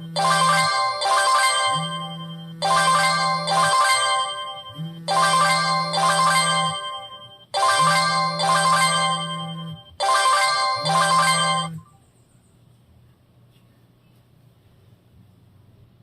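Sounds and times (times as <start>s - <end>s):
phone ringtone melody: 0.0s - 11.9s.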